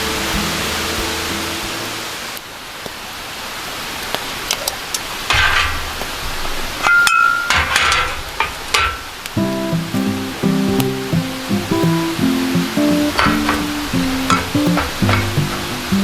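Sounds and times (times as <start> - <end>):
steady hiss: 0.0 - 6.9, 8.2 - 16.0
background music: 9.4 - 16.0.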